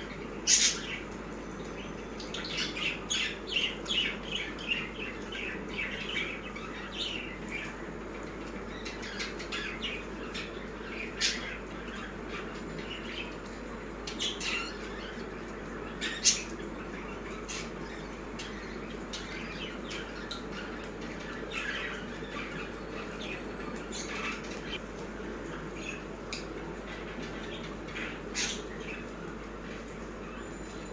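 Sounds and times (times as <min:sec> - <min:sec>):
budgerigars chirping and squawking: 0:00.4 - 0:01.1, 0:02.2 - 0:24.8.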